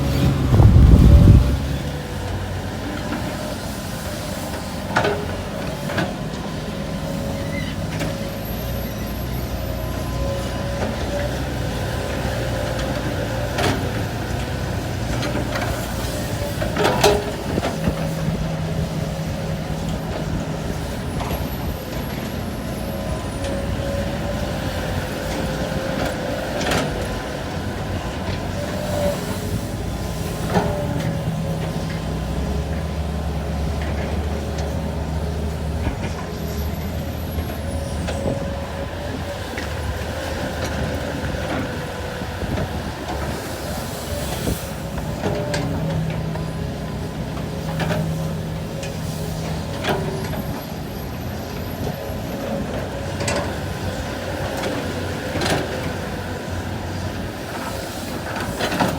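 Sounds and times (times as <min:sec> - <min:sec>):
hydraulic whine: 0:00.0 - 0:04.5
diesel engine drone: 0:00.0 - 0:58.9.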